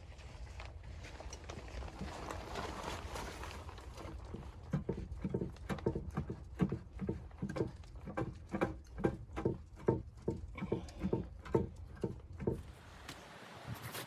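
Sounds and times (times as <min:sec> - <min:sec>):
footsteps crunching through snow: 0:13.0 - 0:14.0.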